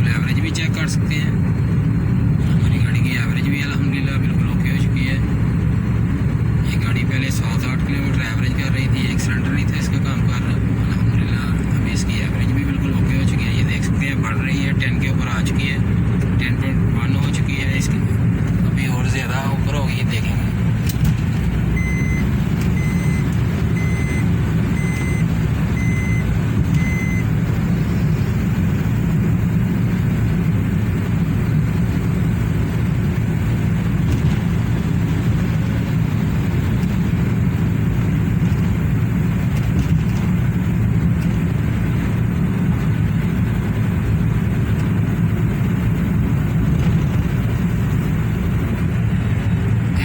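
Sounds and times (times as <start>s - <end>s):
car engine and road noise: 0.0s - 50.0s
short electronic beeps: 21.7s - 27.3s.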